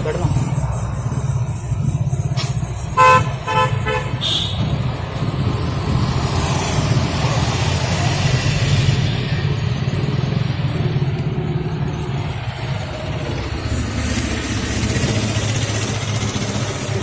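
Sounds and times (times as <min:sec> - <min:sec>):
low engine rumble: 0:00.0 - 0:17.0
vehicle passing: 0:00.0 - 0:17.0
vehicle horn toots: 0:03.0 - 0:04.8.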